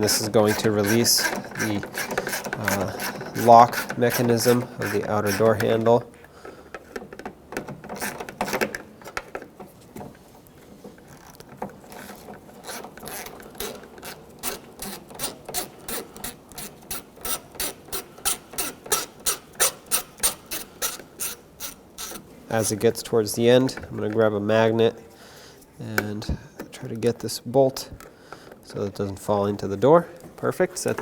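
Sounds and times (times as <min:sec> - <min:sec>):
hand ratchet clicking: 0:00.0 - 0:07.2, 0:07.8 - 0:08.8, 0:11.2 - 0:22.8.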